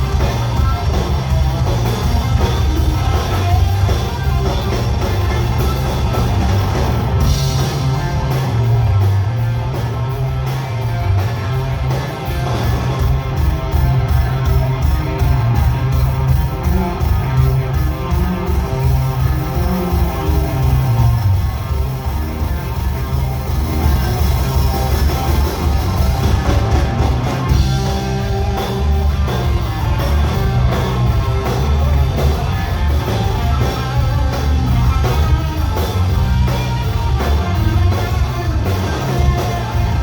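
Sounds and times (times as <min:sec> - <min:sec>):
electric guitar: 0:00.0 - 0:40.0
live rock band playing: 0:00.0 - 0:40.0.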